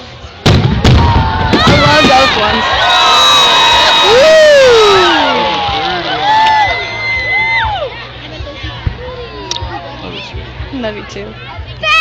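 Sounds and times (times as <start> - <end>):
crowd cheering and whooping: 0.8 - 8.1.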